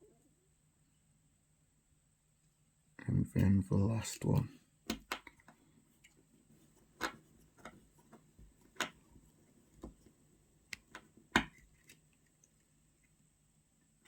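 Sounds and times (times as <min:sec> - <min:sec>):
screwdriver clicks and taps: 0:04.9 - 0:06.2.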